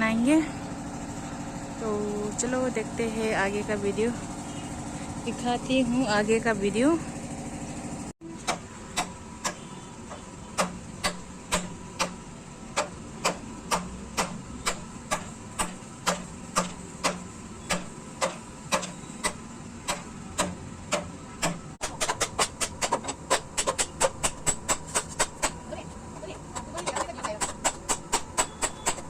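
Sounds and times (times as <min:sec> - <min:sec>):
hammer strikes: 0:08.2 - 0:25.6, 0:26.6 - 0:29.0.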